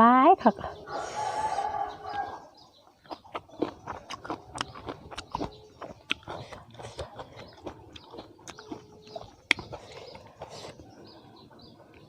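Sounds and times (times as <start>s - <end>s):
crunchy chewing: 0.8s - 12.0s
wet mouth smacks: 3.1s - 9.8s.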